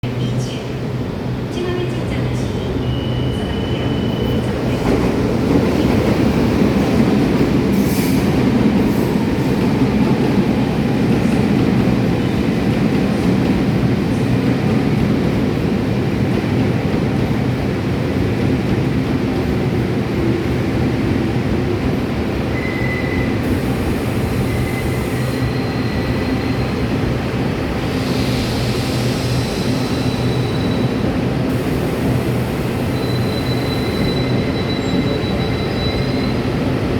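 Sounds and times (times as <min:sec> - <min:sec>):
train wheels rumbling on rails: 0:00.1 - 0:36.9
high-pitched wheel squeals: 0:32.9 - 0:36.5.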